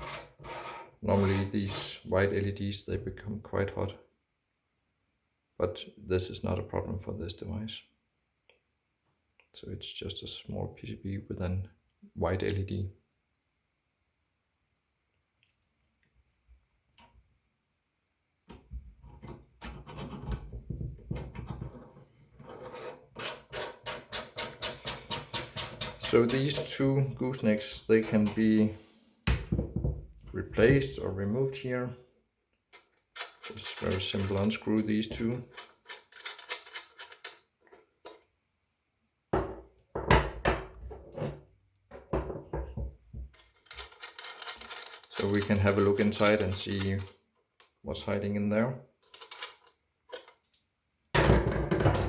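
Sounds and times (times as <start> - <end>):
screws being undone by hand: 35.5 - 37.4, 43.4 - 46.9, 49.0 - 50.4
metal knocks and clunks: 51.2 - 52.0.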